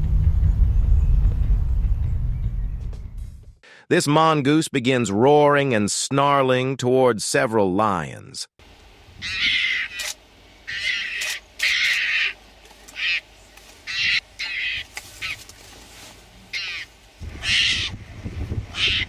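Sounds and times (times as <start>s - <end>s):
low rumble: 0.0s - 3.6s
mongoose snarling calls: 9.2s - 13.3s, 13.9s - 15.4s, 16.5s - 18.0s, 18.7s - 19.0s.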